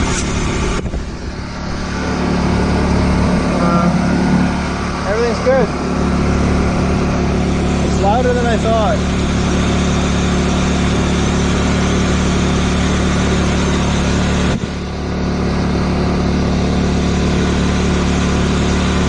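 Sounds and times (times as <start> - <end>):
generator engine running: 0.0 - 19.0.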